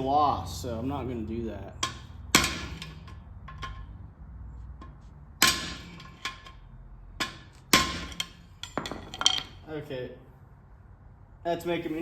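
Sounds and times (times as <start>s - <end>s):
hammer striking steel punch: 1.8s - 3.7s, 4.8s - 6.5s, 7.2s - 9.0s.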